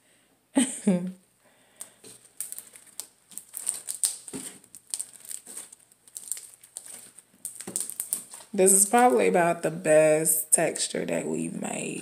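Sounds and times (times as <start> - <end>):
slime sticky crackles and pops: 2.0 - 9.3.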